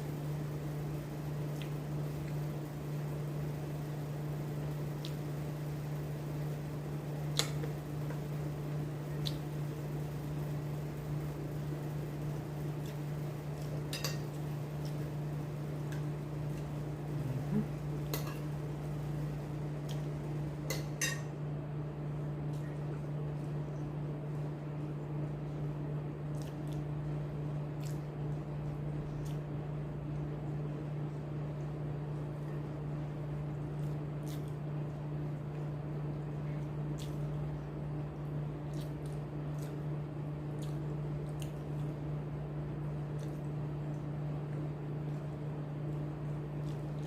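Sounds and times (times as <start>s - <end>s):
steady low hum: 0.0s - 47.0s
dishes and utensils clinking: 20.7s - 21.3s.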